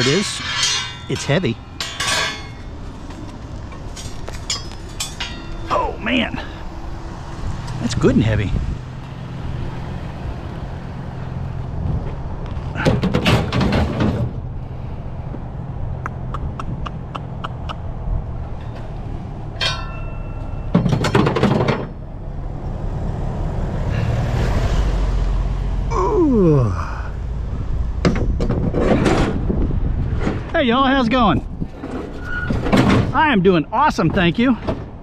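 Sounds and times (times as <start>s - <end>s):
clanking and rattling: 0.0s - 5.9s, 12.0s - 14.5s, 18.4s - 22.1s, 28.0s - 30.5s, 31.4s - 33.3s
sharp ticks: 16.0s - 17.9s.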